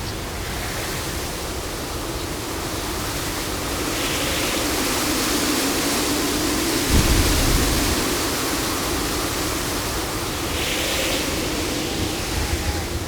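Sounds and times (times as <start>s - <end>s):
wind: 0.0s - 13.0s.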